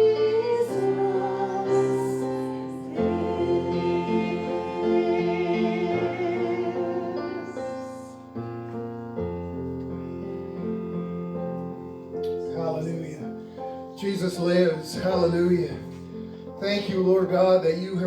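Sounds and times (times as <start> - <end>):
person singing: 0.0 - 8.0
keyboard chords: 0.0 - 18.0.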